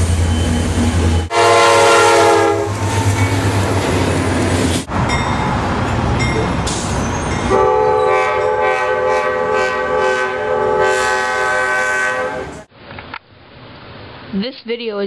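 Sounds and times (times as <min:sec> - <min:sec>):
train rumble: 0:00.0 - 0:12.7
train horn long blast: 0:01.3 - 0:03.2, 0:07.5 - 0:12.7.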